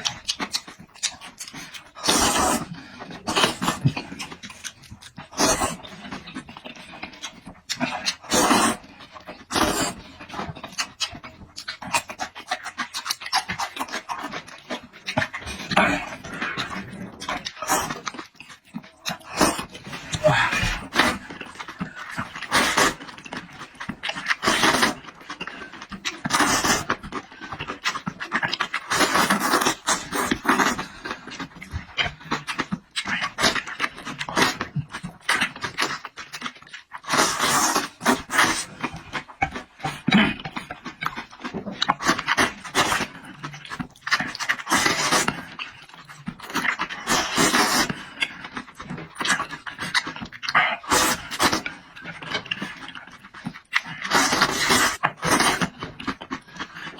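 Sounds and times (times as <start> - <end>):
slurping: 0.0 - 34.6, 36.7 - 56.9
noisy chewing: 0.0 - 56.9
mouth breathing: 19.4 - 21.6.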